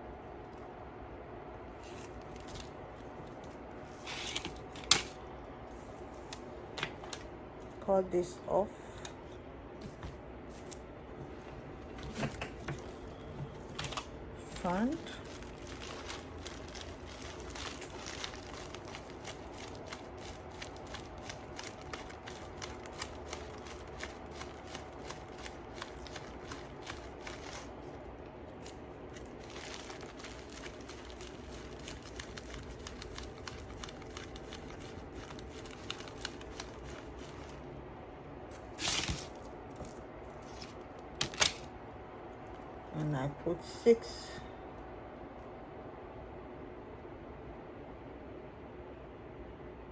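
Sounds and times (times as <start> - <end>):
faint hum: 0.0 - 49.9
beads clicking and rattling: 15.2 - 27.7, 29.1 - 37.6.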